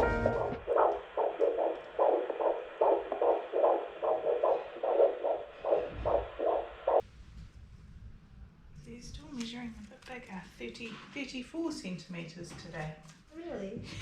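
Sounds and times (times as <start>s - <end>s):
fetal doppler heartbeat whooshing: 0.0s - 7.0s.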